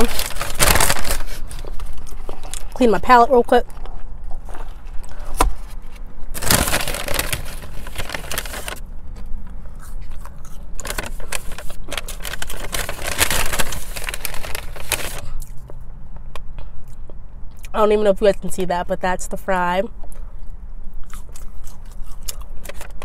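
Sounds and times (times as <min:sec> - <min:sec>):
paper bag rustling and crinkling: 0:00.0 - 0:03.2, 0:04.4 - 0:08.8, 0:10.8 - 0:15.2.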